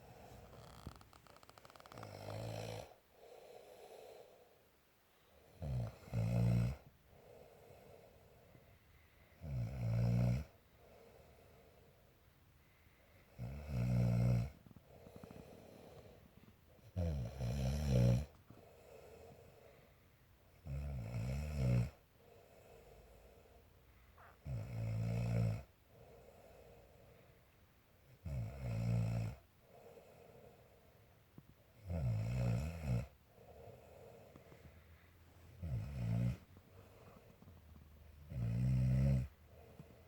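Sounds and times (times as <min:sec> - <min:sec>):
woman snoring: 0:00.0 - 0:03.0, 0:05.5 - 0:06.9, 0:13.4 - 0:16.3, 0:16.9 - 0:18.4, 0:35.6 - 0:40.0
quiet breathing: 0:00.0 - 0:20.6, 0:21.8 - 0:28.4, 0:29.1 - 0:40.0.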